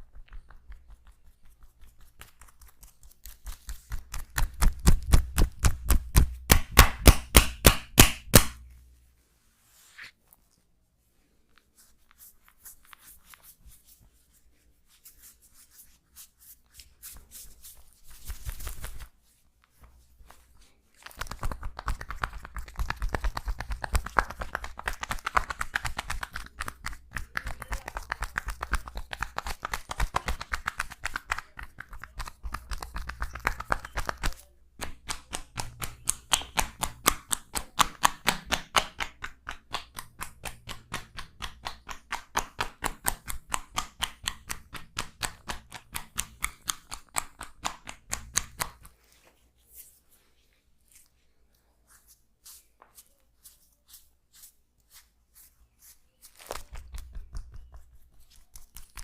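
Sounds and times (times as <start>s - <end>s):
hands rubbing skin: 0.0s - 7.6s, 9.4s - 10.7s, 11.4s - 59.0s
massage tapping and chopping: 0.0s - 8.7s, 21.2s - 48.9s.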